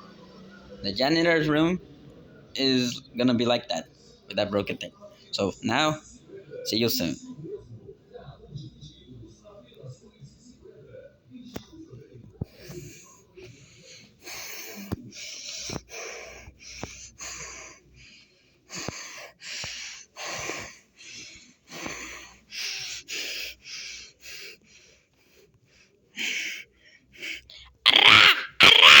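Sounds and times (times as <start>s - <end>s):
rasping wheezy breathing: 12.4s - 29.0s.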